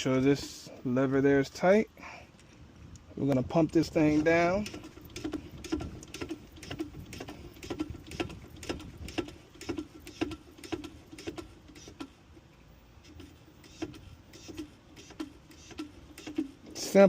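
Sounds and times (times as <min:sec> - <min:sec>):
hand pump clicking: 0:03.2 - 0:12.2, 0:13.0 - 0:16.8.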